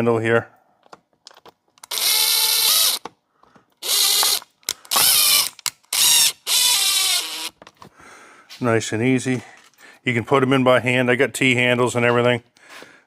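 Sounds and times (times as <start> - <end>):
cordless power driver driving screws: 1.8 - 3.2, 3.8 - 7.7.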